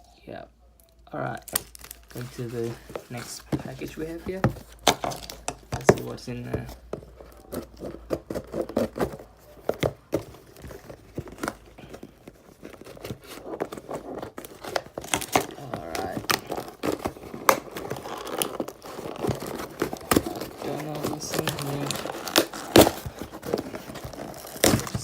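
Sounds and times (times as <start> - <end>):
packaging crumpled and torn: 1.4 - 5.6, 10.4 - 25.0.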